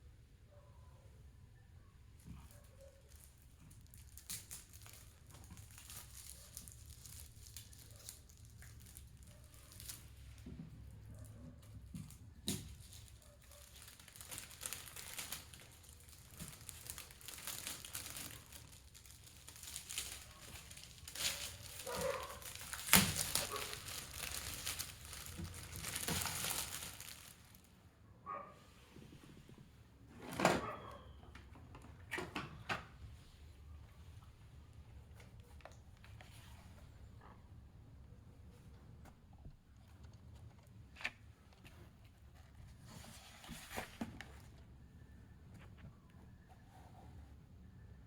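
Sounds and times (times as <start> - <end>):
plastic packaging crinkling: 2.8 - 10.4, 11.8 - 27.8.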